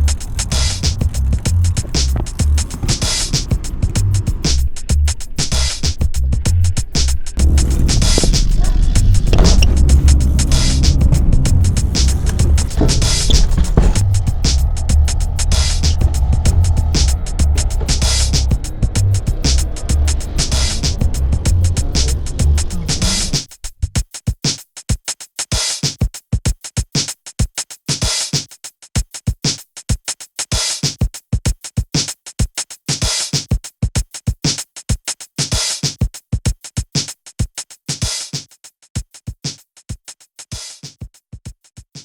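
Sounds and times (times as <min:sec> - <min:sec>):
hip-hop drum-machine beat: 0:00.0 - 0:42.0.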